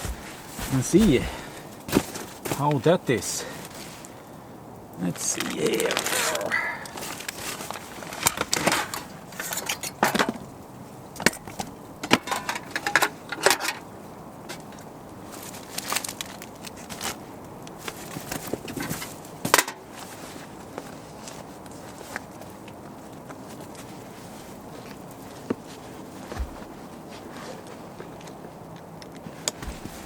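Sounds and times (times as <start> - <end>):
camping gear knocks and clicks: 0.0 - 2.8, 11.2 - 13.8, 17.8 - 20.1, 24.9 - 30.0.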